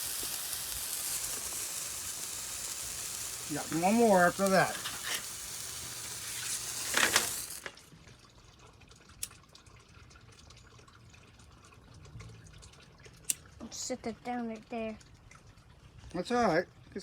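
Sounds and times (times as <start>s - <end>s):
firework hissing: 0.0s - 7.8s.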